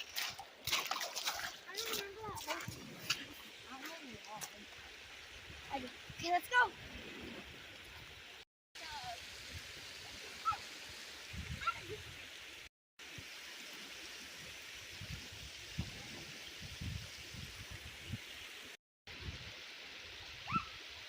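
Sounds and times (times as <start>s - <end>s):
creek rapids rushing: 0.0s - 6.8s.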